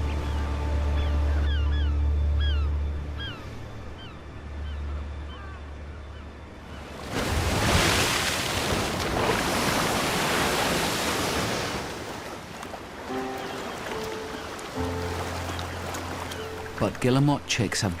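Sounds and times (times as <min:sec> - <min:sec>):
seabirds chirping: 0:00.0 - 0:08.8, 0:09.6 - 0:18.0
surf crashing over rocks: 0:07.1 - 0:14.2.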